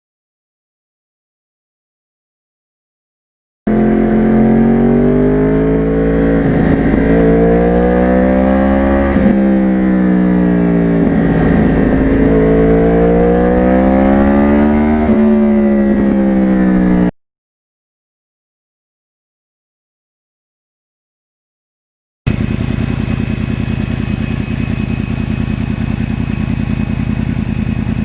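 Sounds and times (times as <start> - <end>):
motorcycle engine accelerating: 3.7 - 17.2, 22.3 - 28.0.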